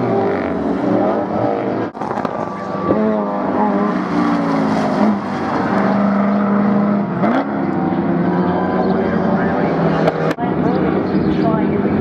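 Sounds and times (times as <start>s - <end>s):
racing car engines revving: 0.0s - 12.0s.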